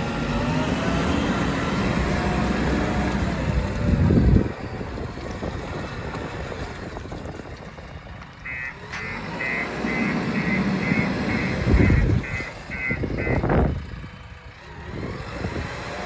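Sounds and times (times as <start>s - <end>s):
diesel engine running: 0.0s - 16.0s
reversing alarm beeping: 8.5s - 13.5s.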